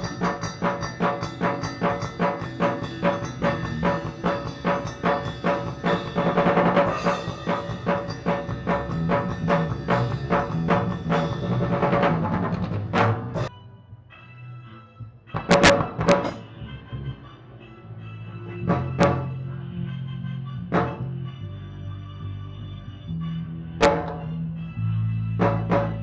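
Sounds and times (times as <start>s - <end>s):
drum kit fast beat: 0.0s - 13.5s
live band music: 0.0s - 13.5s, 14.2s - 21.2s
cymbal swell: 6.9s - 10.6s.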